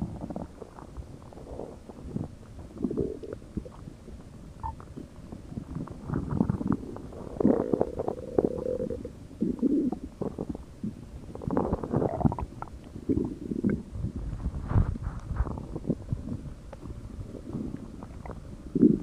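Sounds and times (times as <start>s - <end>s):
stomach growling: 0.0s - 4.0s, 4.6s - 19.0s.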